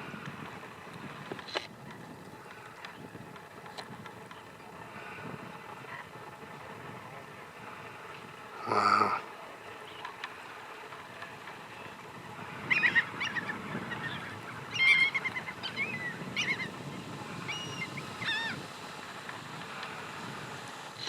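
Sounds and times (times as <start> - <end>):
steady low background noise: 0.0 - 21.0
birds calling: 11.7 - 19.1.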